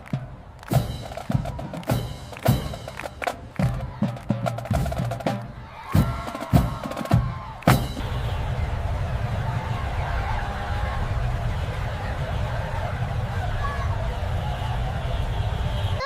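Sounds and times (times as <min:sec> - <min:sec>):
drum beat: 0:00.0 - 0:08.2.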